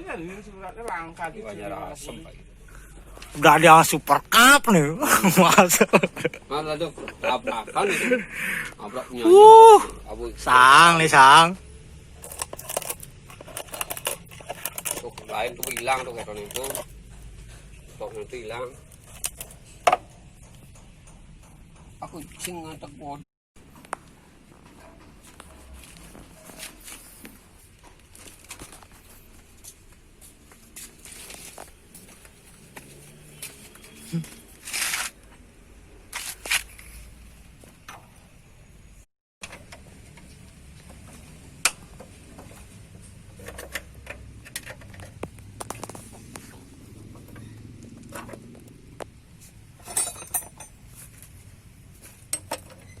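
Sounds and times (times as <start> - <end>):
objects being handled: 12.0 - 22.6, 23.6 - 35.4
rattling clinks: 49.8 - 50.8.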